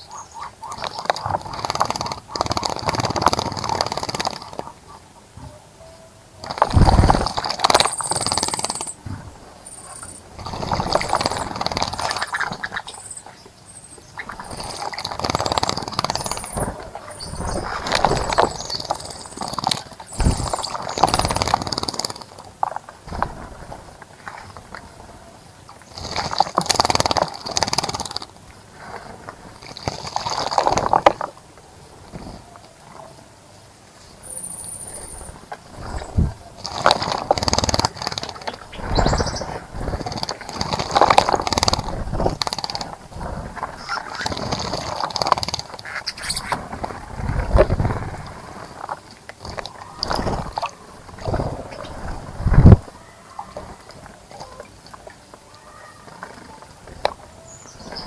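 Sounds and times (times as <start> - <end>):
high bird chirps: 7.8 - 9.0, 9.6 - 19.4, 20.1 - 21.6, 34.2 - 35.4, 38.6 - 39.5, 45.8 - 46.6.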